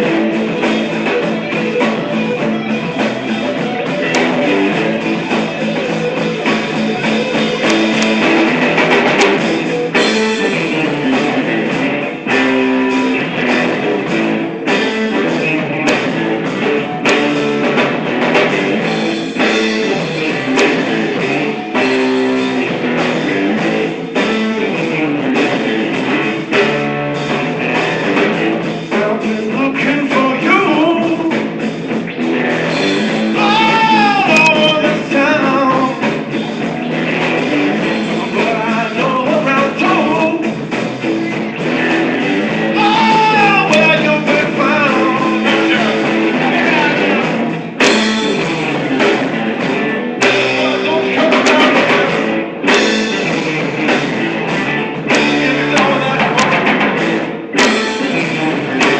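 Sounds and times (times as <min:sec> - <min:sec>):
guitar: 0:00.0 - 0:58.9
person singing: 0:28.7 - 0:31.6, 0:33.3 - 0:36.3, 0:37.8 - 0:40.6, 0:42.6 - 0:47.4, 0:49.6 - 0:52.2, 0:55.1 - 0:56.8.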